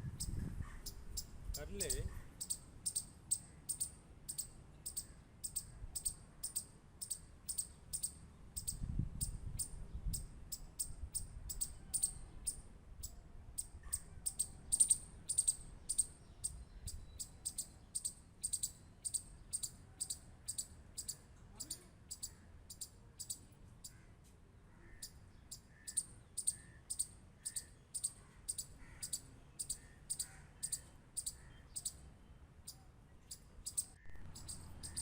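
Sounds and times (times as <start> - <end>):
squirrel clicking: 33.7 - 35.0.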